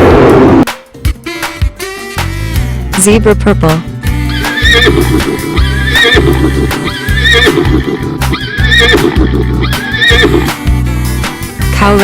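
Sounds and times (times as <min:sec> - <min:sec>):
upbeat background music: 0:00.7 - 0:12.0.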